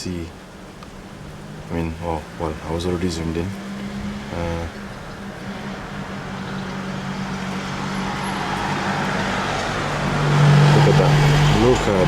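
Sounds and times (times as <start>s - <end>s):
road vehicle approaching: 0.3s - 12.0s.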